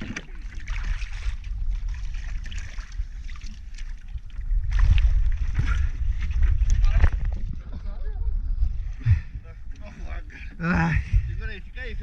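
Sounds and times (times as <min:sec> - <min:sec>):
water sloshing and splashing: 0:00.0 - 0:07.7
constant low rumble: 0:00.0 - 0:12.0.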